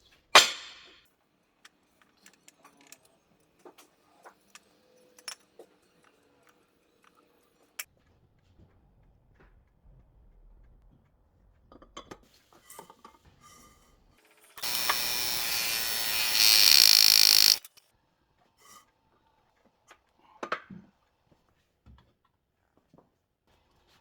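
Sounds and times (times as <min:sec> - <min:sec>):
workshop tool rushing noise: 0:14.6 - 0:17.7.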